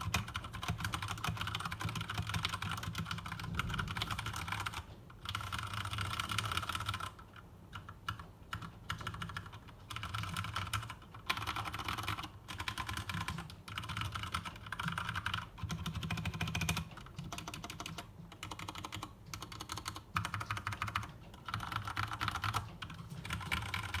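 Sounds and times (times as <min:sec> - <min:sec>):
mechanical keyboard typing: 0:00.0 - 0:24.0.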